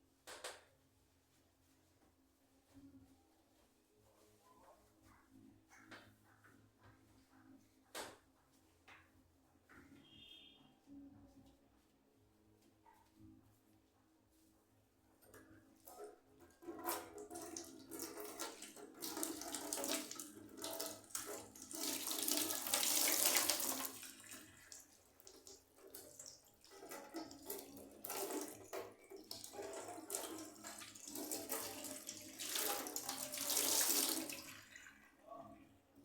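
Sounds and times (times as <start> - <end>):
tap water running into sink: 15.9 - 35.0.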